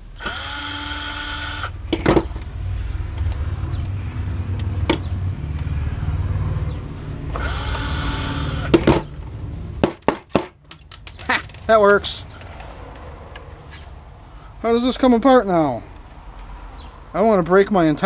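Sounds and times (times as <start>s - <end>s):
low rumble: 0.0s - 9.9s, 10.8s - 17.2s
power drill motor whining: 0.2s - 1.8s, 7.3s - 8.8s.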